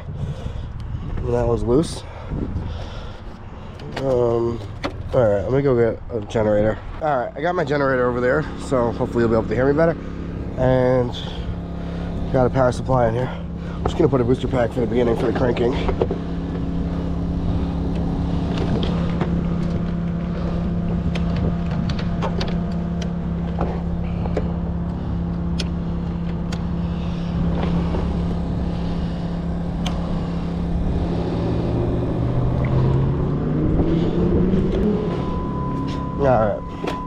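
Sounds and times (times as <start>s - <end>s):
generator engine running: 0.0s - 37.0s
rising tone: 26.0s - 37.0s.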